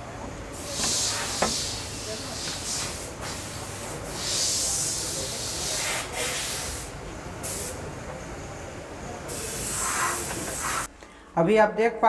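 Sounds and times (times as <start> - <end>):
hissing bursts: 0.5 - 7.9, 9.3 - 10.9.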